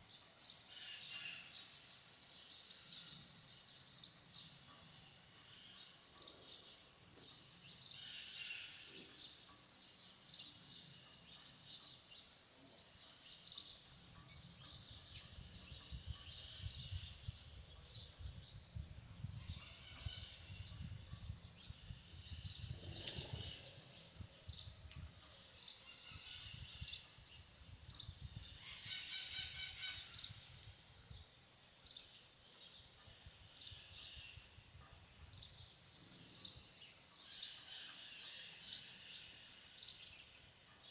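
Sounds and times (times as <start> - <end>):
birds calling and chirping: 0.5 - 40.9.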